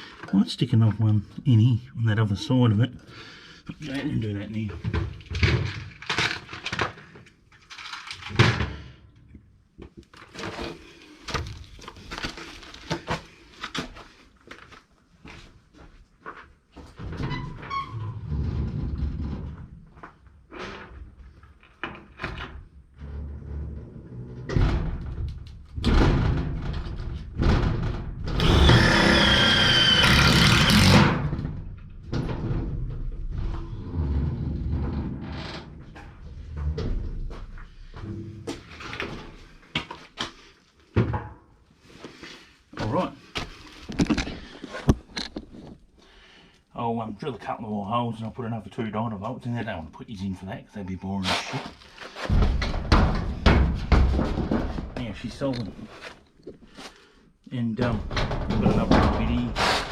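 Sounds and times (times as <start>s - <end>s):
power drill running: 28.4s - 31.2s.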